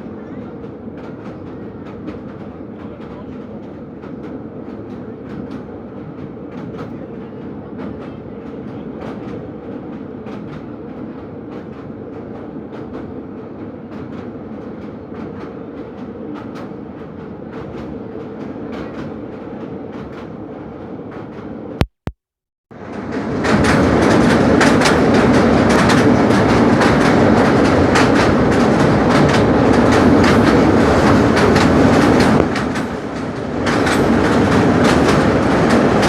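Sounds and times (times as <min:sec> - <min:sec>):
train rumbling on track: 0:00.0 - 0:21.8, 0:22.7 - 0:36.0
wheels clicking over rails: 0:23.0 - 0:36.0.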